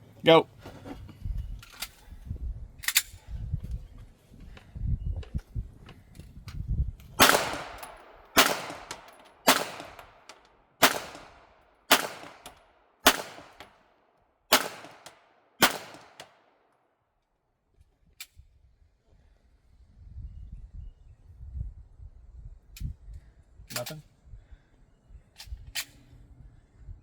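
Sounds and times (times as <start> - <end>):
gunshot echo: 7.2 - 13.8, 14.5 - 16.4
gunshots: 7.2 - 13.8, 14.5 - 16.4.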